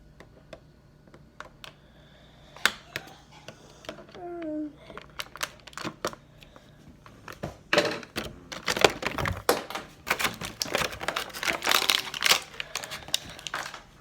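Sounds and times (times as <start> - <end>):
plastic packaging clicking and crinkling: 3.8 - 14.0.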